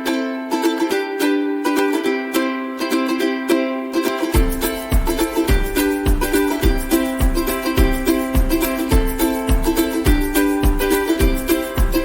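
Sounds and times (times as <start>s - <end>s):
plucked string music: 0.0s - 12.0s.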